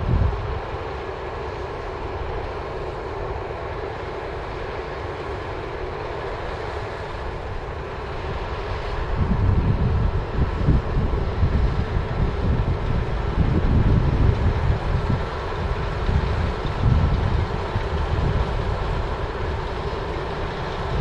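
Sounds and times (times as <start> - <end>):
wind buffeting microphone: 0.0 - 1.1, 7.3 - 21.0
combine harvester droning: 0.0 - 21.0.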